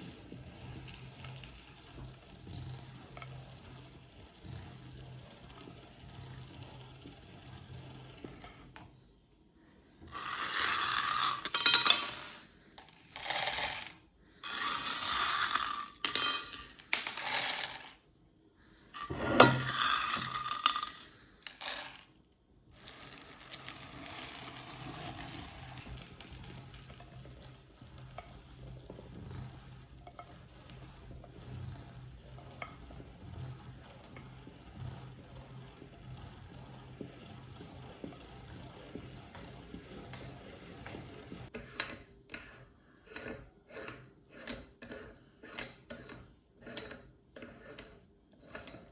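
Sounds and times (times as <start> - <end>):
chocolate crunching in meat grinder: 22.8 - 41.5.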